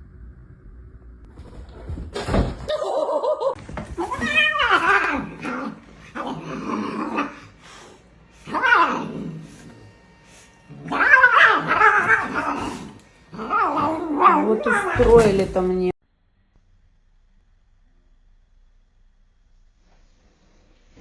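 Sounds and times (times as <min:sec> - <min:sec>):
pet animal crying out: 0:04.0 - 0:07.5, 0:08.4 - 0:09.3, 0:10.7 - 0:15.3.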